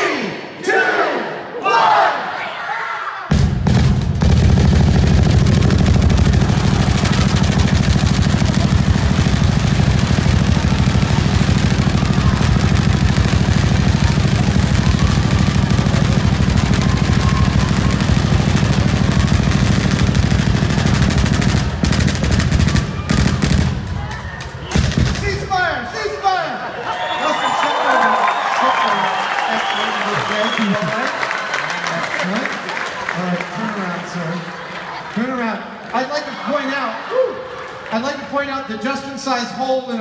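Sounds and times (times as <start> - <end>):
paintball gun rapid fire: 3.3 - 25.5.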